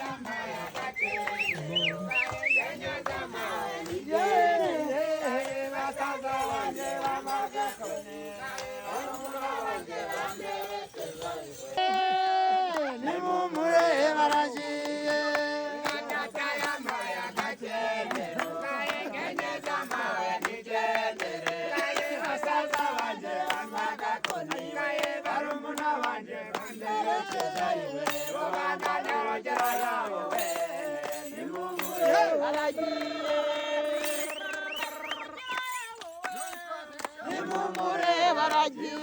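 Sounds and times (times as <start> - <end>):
steady percussion: 0.0 - 11.8, 26.5 - 39.0
group singing and chanting: 0.0 - 39.0.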